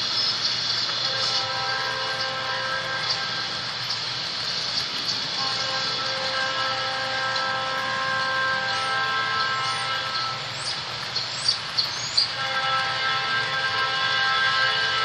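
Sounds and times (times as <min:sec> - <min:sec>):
train rumbling past: 0:00.0 - 0:15.0.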